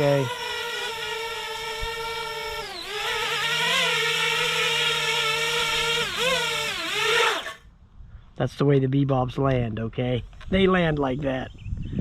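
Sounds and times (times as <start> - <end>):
drone propellers whining: 0.0 - 7.6.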